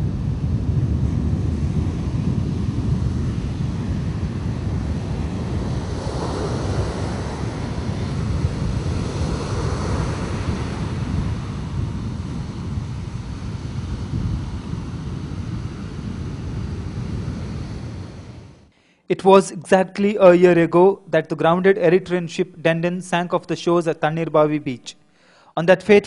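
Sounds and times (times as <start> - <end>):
wind buffeting microphone: 0.0 - 18.7
sea surf washing in: 3.0 - 13.6.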